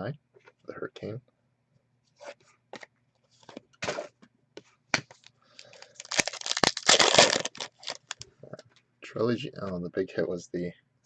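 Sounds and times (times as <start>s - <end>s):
card packaging clicks and rustles: 5.1s - 8.2s
foil wrapper crinkling and tearing: 5.6s - 8.2s.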